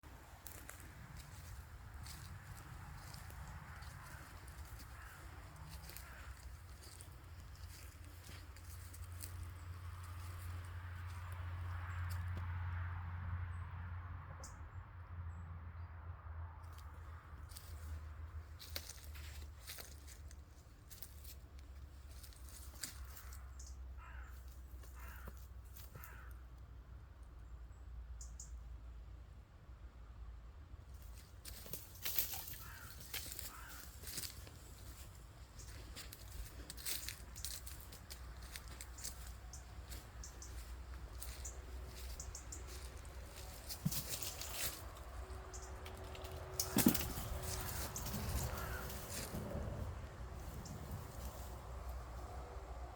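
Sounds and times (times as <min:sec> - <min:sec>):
rustling of dry leaves and twigs: 0:00.0 - 0:12.4, 0:16.7 - 0:26.4, 0:30.9 - 0:52.9
crow cawing: 0:03.0 - 0:07.0, 0:22.5 - 0:26.4, 0:32.2 - 0:35.0, 0:46.6 - 0:49.4.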